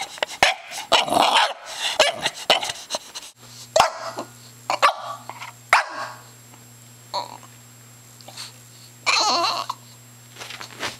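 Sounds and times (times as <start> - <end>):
dog making odd vocal noises: 9.1 - 9.8.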